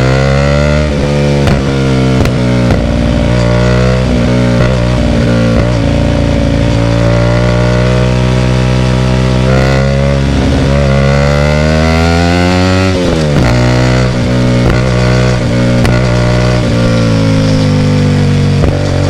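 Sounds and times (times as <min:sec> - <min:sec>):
motorcycle engine revving: 0:00.0 - 0:19.0.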